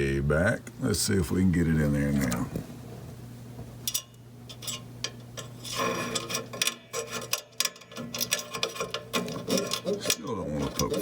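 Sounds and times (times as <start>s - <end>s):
wire clicking and scraping: 3.8s - 11.0s.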